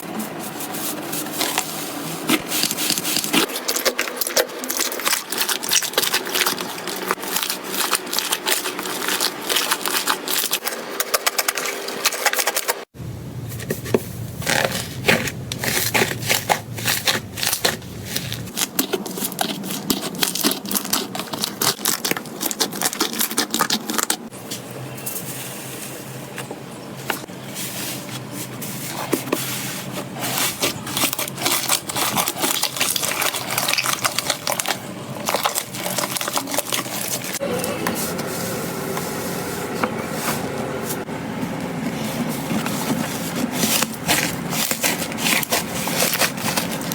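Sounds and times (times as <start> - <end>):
crunchy slime crackling: 0.6 - 12.8, 14.4 - 24.3, 28.2 - 38.3, 40.6 - 46.9.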